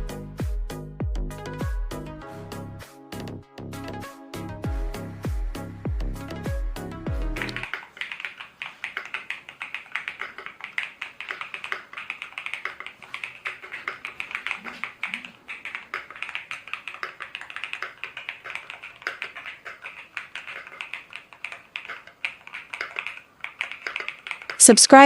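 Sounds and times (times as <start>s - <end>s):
mechanical keyboard typing: 7.4s - 24.8s.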